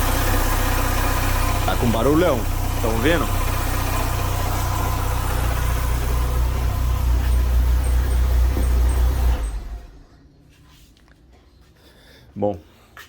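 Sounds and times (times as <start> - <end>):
loud metallic engine noise: 0.0 - 10.0
car engine idling: 0.0 - 10.2.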